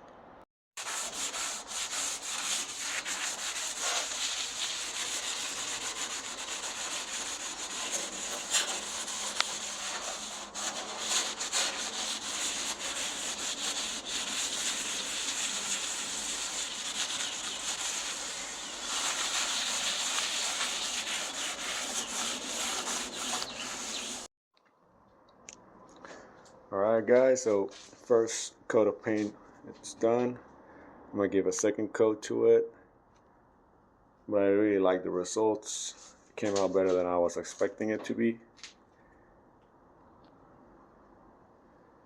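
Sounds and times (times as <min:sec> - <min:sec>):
sandpaper rubbing on steel: 0:00.8 - 0:24.3.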